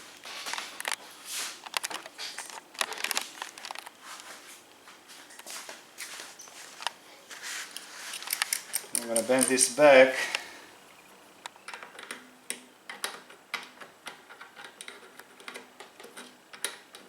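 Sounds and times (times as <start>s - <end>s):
rustling of handling: 0.0s - 10.8s
light clicks of small parts: 7.7s - 10.5s.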